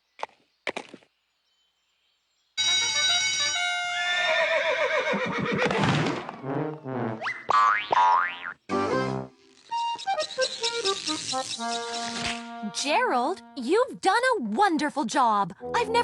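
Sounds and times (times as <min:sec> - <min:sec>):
horse neighing: 0:04.0 - 0:05.8.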